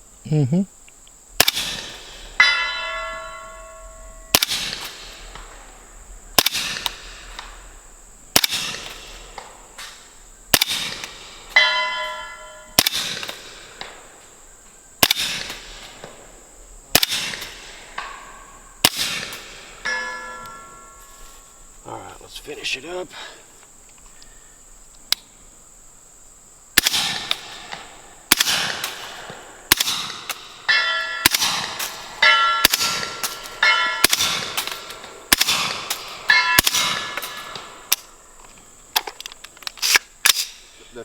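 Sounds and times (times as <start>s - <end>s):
suppressed rifle shots: 1.3s - 21.2s, 26.8s - 38.2s, 39.0s - 40.6s
steel target ringing: 1.6s - 5.6s, 11.6s - 13.2s, 17.3s - 21.3s, 29.8s - 37.9s.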